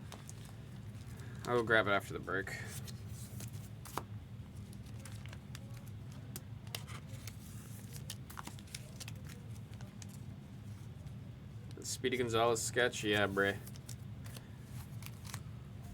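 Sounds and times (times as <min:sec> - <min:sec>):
steady low hum: 0:00.0 - 0:15.9
plastic crinkling: 0:04.6 - 0:10.2.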